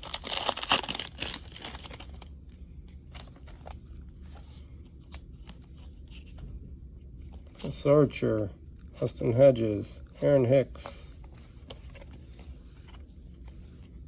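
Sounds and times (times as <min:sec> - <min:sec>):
foil wrapper crinkling and tearing: 0:00.0 - 0:02.3.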